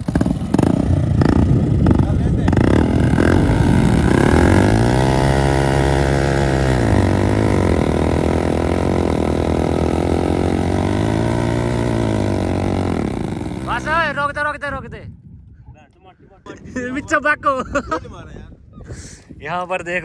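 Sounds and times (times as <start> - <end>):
motorcycle engine revving: 0.0 - 14.4.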